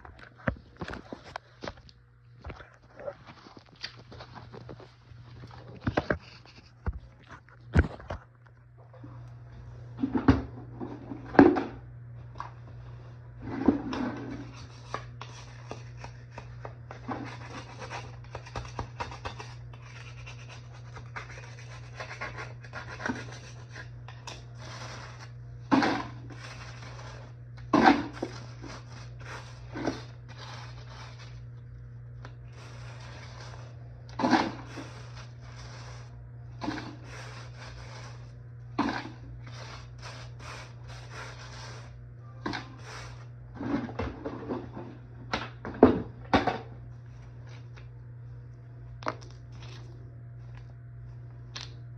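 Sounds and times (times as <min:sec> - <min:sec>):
steady low hum: 0:00.0 - 0:51.9
objects knocking and scraping: 0:43.5 - 0:46.7.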